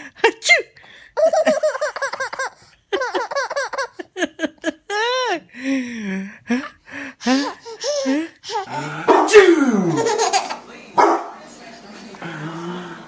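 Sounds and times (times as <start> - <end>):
baby laughing: 1.2 - 5.4, 6.5 - 10.7.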